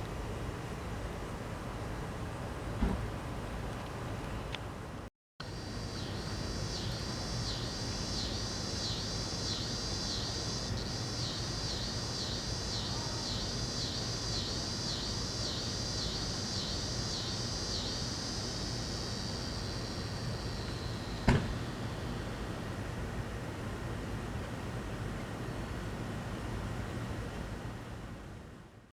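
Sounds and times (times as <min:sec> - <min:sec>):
cicada buzzing song: 0:05.4 - 0:23.1.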